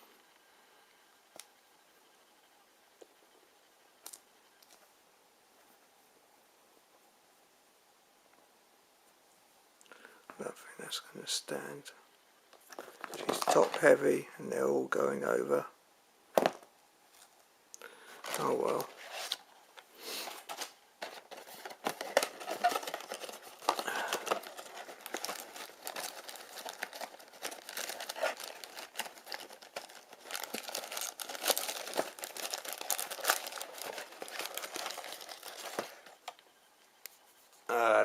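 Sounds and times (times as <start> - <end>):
packaging crackling and rustling: 12.6 - 14.0, 18.1 - 19.5, 20.2 - 36.6.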